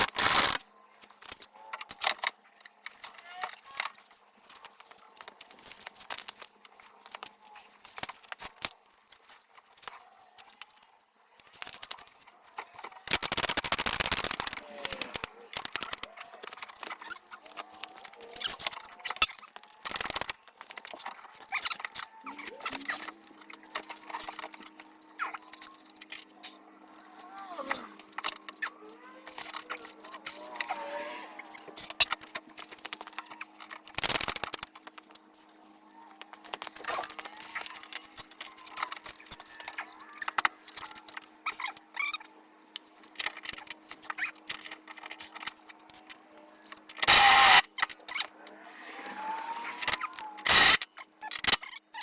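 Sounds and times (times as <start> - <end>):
ratchet clicking: 0.0 - 0.6, 13.1 - 16.1, 47.0 - 47.7, 49.8 - 51.6
faint squeaks: 20.9 - 32.0.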